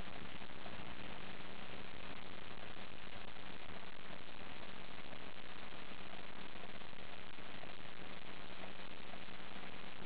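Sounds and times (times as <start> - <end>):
low steady hum: 0.0 - 10.0
wood fire hissing and crackling: 0.0 - 10.0.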